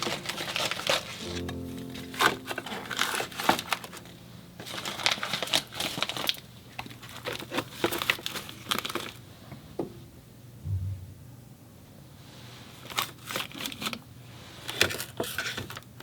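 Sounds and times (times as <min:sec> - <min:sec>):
plastic bags crinkling: 0:00.0 - 0:09.2, 0:12.8 - 0:14.0.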